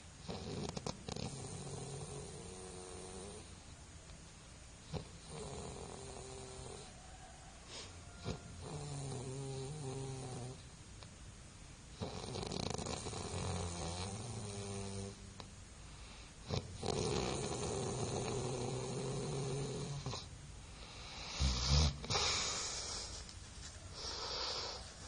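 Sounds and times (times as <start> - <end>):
person snoring: 4.9 - 6.9, 7.7 - 10.6, 12.0 - 15.2, 16.4 - 20.3, 20.9 - 23.2
quiet breathing: 4.9 - 10.6, 12.0 - 25.0.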